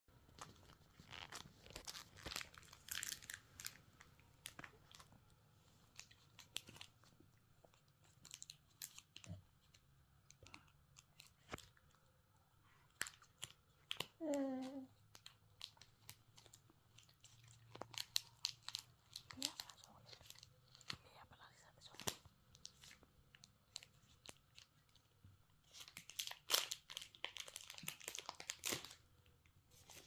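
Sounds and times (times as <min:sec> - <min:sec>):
chocolate crunching while chewed: 0:14.9 - 0:21.0, 0:22.1 - 0:29.1.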